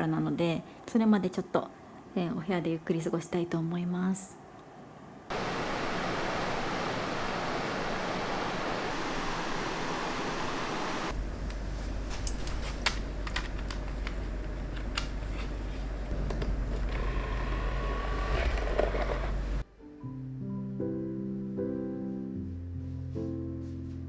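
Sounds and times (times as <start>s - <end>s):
flowing water rushing: 5.3s - 11.1s.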